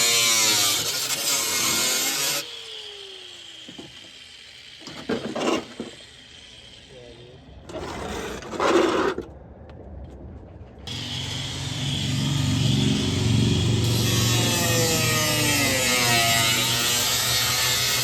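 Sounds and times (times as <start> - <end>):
reciprocating saw cutting sheet metal: 0.0 - 8.9, 10.9 - 18.0
tools scraping and clattering: 4.8 - 6.0.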